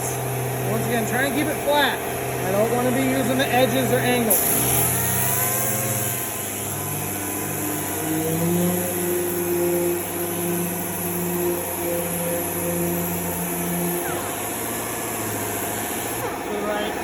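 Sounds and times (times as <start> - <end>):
sander running: 0.0 - 17.0.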